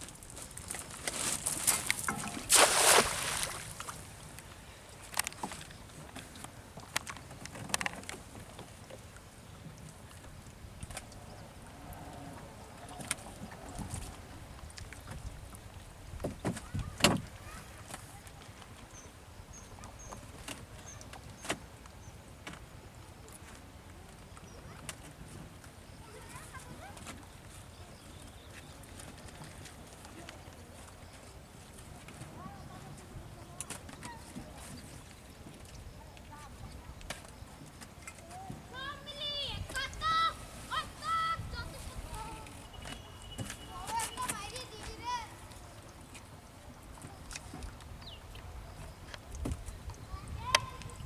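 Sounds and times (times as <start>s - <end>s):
water splashing: 0.0s - 4.4s, 38.7s - 51.0s.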